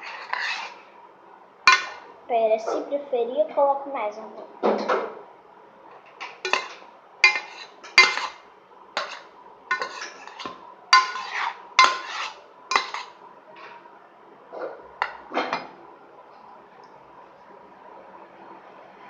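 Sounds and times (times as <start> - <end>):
metal spoon scraping a dish: 0.0 - 0.9, 1.7 - 2.0, 6.2 - 8.4, 9.0 - 13.8.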